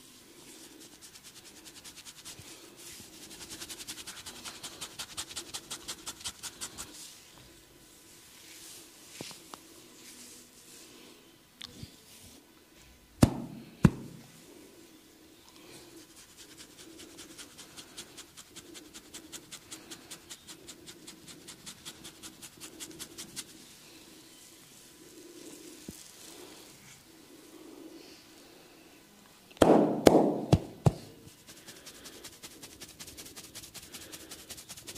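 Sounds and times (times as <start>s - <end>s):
loud sharp cracks: 29.6s - 30.6s.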